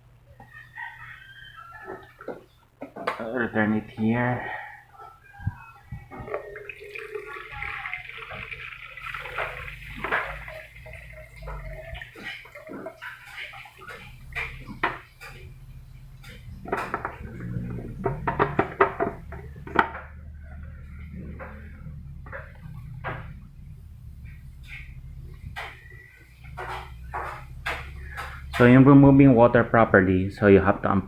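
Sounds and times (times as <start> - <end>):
water splashing in plastic tank: 5.5 - 20.2, 21.3 - 29.8
plastic parts clicking and knocking: 16.2 - 20.1.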